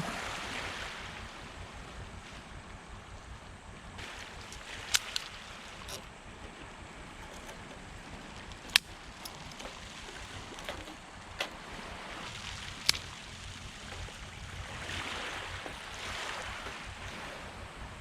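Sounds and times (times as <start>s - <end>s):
waves breaking on shore: 0.0s - 18.0s
campfire wood popping: 4.0s - 6.1s, 7.0s - 14.4s.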